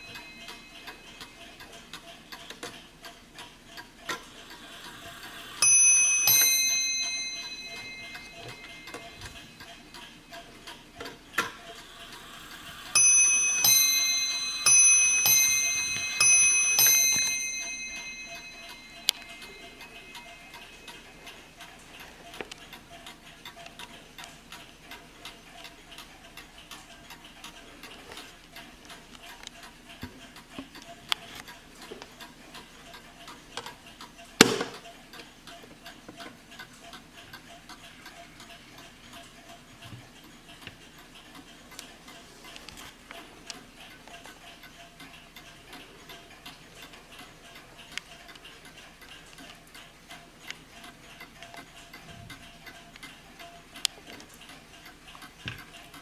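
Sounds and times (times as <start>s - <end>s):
clock ticking: 0.0s - 56.0s
loud sharp knock: 34.4s - 34.8s.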